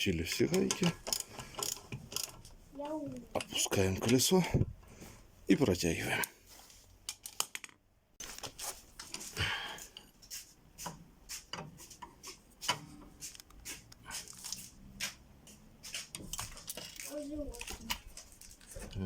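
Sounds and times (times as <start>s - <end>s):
wrench clicking on wheel nuts: 0.3s - 2.5s.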